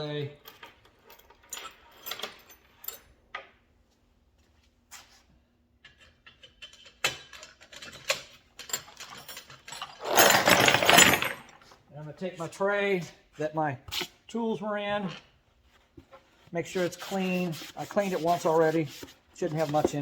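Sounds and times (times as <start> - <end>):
metal clattering rattle: 6.6 - 11.5
metal hand tools clinking: 8.6 - 11.5.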